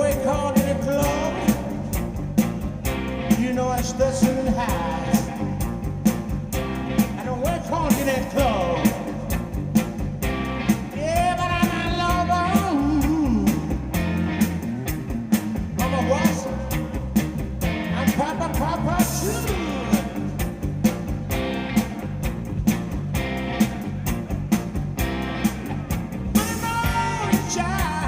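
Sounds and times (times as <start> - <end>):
person singing: 0.0 - 2.0, 3.3 - 5.6, 10.9 - 13.9, 17.9 - 20.4, 26.4 - 28.0
rock band playing: 0.0 - 28.0.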